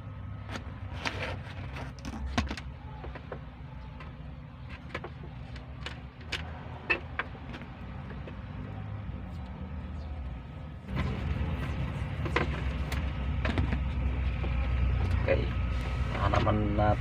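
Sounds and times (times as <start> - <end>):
clicks of handling wires and connectors: 0.5 - 8.7.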